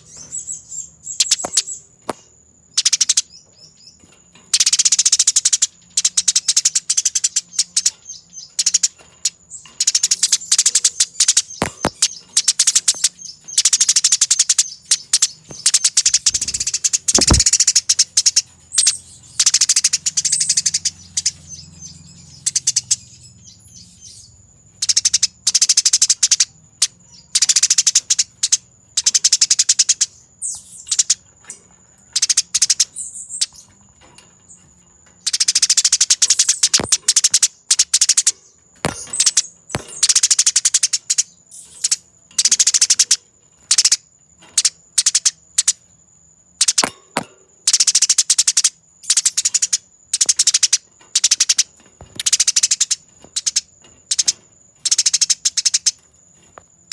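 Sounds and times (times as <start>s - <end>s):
sparrow shrill chattering: 0.0s - 31.2s, 35.2s - 44.0s, 46.6s - 56.0s
low thumps: 11.6s - 12.1s, 17.2s - 17.6s.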